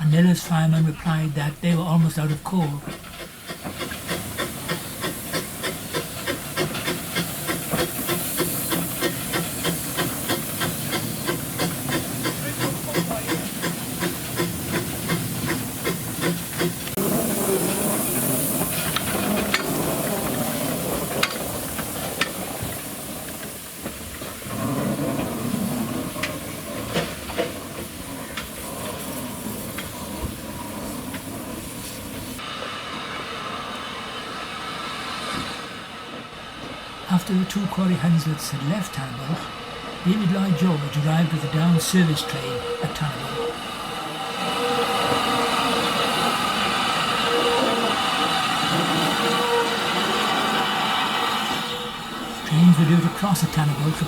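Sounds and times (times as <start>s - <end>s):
steam hissing: 0.0s - 54.0s
steam locomotive exhaust beats: 0.0s - 54.0s.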